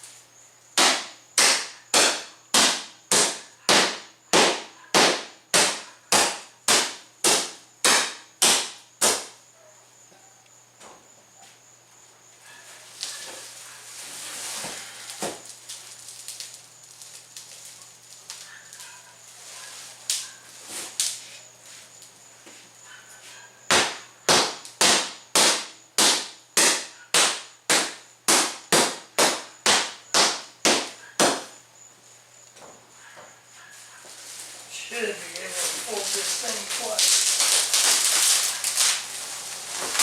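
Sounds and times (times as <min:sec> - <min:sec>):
glass cracking: 0:15.3 - 0:18.5, 0:35.4 - 0:40.0.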